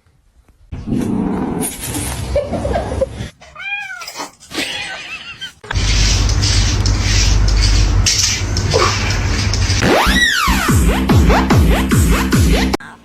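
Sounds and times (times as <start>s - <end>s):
cat meowing: 3.4s - 5.6s
loud music with heavy bass: 9.8s - 12.8s.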